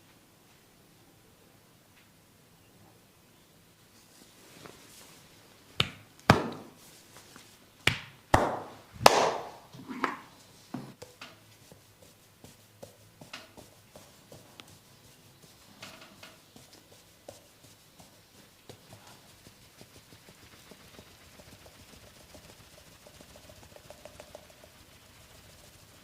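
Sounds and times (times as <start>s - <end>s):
hand slaps on body: 5.8s - 6.7s, 7.8s - 9.6s.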